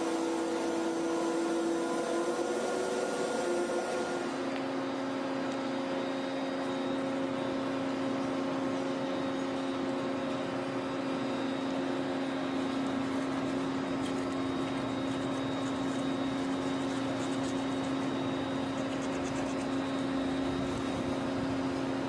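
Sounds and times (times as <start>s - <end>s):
machine motor humming: 0.0s - 5.1s.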